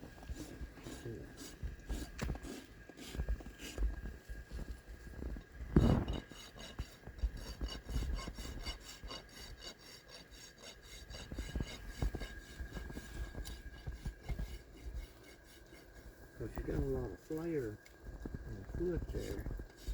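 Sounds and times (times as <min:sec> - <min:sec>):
hoof rasp scraping hoof: 0:00.0 - 0:19.9.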